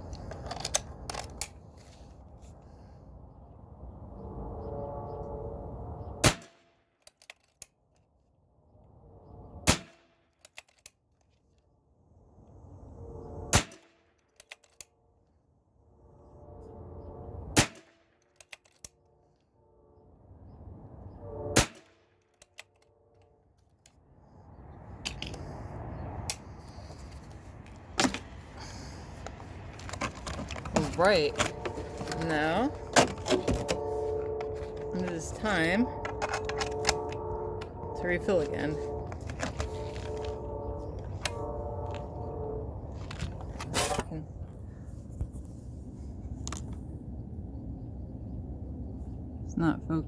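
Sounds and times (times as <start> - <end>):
air rifle shots: 17.6 - 17.9.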